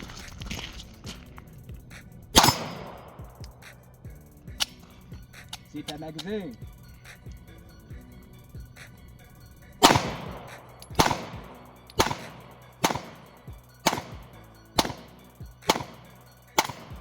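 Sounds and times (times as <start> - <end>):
pistol shots with ringing echo: 2.4 - 3.4, 9.8 - 17.0.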